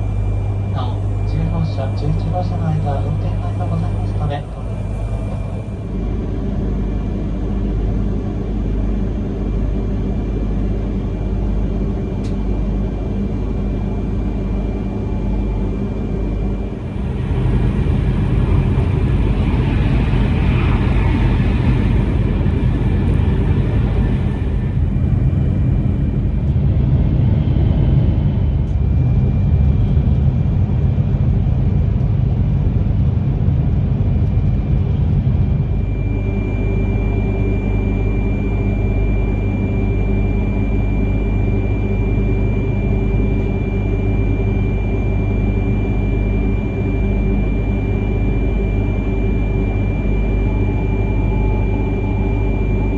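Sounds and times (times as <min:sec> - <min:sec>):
thin high whine: 0:00.0 - 0:08.6, 0:35.6 - 0:52.9
train rumble inside passenger car: 0:00.0 - 0:52.9.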